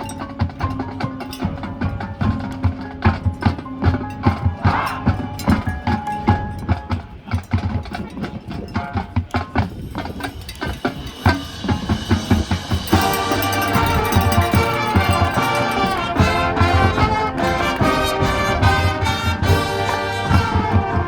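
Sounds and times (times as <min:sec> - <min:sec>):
marching band percussion: 0:00.0 - 0:21.0
pitched mallet notes: 0:11.4 - 0:20.2
brass band sustained chords: 0:12.4 - 0:21.0.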